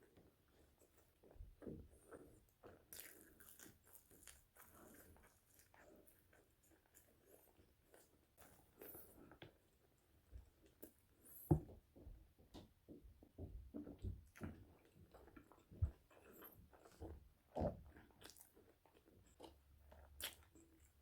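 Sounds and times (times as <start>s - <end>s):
chewing crunchy fries: 0.0s - 10.0s, 14.2s - 21.0s.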